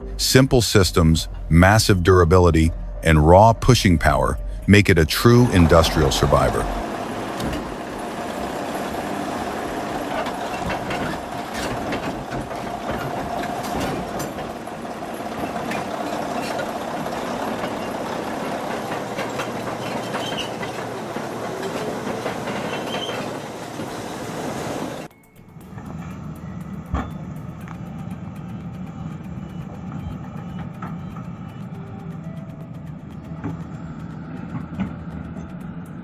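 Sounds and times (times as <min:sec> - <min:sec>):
bulldozer engine running: 0:00.0 - 0:36.0
bulldozer tracks clattering: 0:00.0 - 0:36.0
high squeal: 0:19.2 - 0:31.9.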